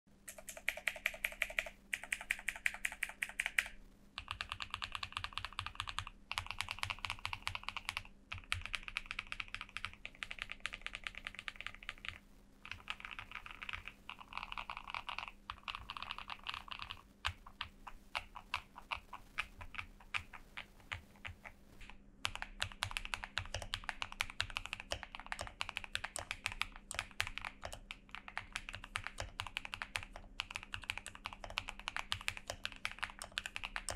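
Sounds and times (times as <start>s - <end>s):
mechanical keyboard typing: 0.3s - 33.9s.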